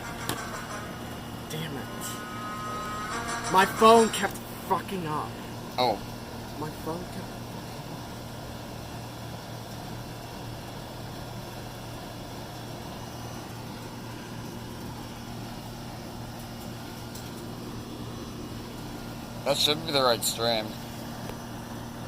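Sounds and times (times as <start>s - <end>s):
low machine hum: 0.0s - 22.0s.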